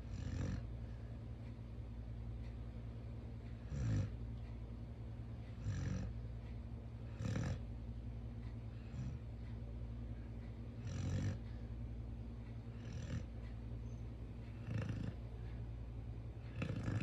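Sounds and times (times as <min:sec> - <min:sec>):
dog snoring: 0:00.0 - 0:00.7, 0:03.6 - 0:04.2, 0:05.5 - 0:06.2, 0:07.0 - 0:07.7, 0:08.8 - 0:09.2, 0:10.8 - 0:11.5, 0:12.7 - 0:13.4, 0:14.5 - 0:15.2, 0:16.4 - 0:17.0
steady low hum: 0:00.0 - 0:17.0.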